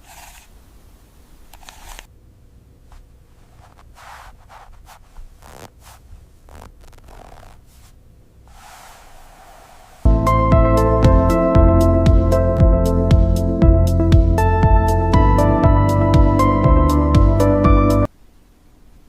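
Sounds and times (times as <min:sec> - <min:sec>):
soft scraping and rustling: 0:00.0 - 0:00.5, 0:02.9 - 0:10.1.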